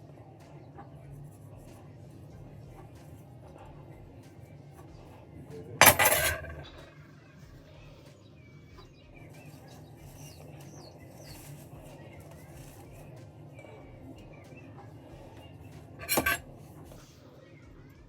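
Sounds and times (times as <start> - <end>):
hard object clattering down: 5.8 - 6.9, 16.0 - 16.5.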